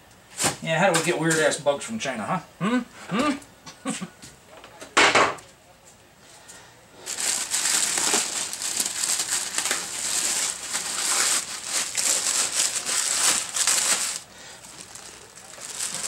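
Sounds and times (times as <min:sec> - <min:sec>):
packing material crinkling: 0:07.0 - 0:16.0.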